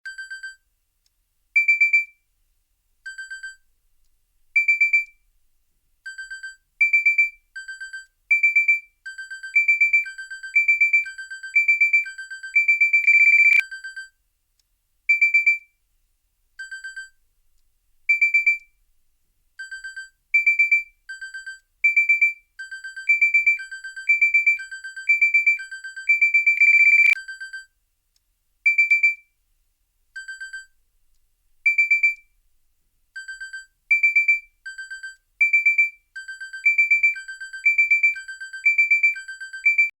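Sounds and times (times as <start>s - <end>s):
alarm beeps: 9.4s - 13.6s, 21.9s - 27.2s.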